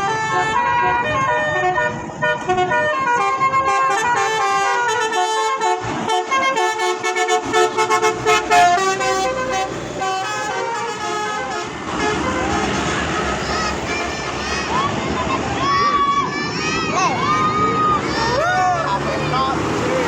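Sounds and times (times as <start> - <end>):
multi-tone musical vehicle horn: 0.0 - 14.8.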